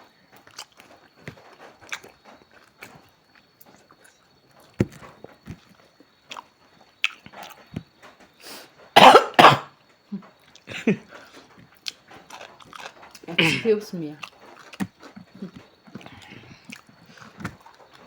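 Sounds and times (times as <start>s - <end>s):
mouth clicks and eating noises: 0.3s - 9.5s, 10.1s - 18.0s
person coughing: 9.0s - 9.7s, 13.4s - 13.8s
throat clearing: 9.0s - 9.7s, 13.4s - 13.8s.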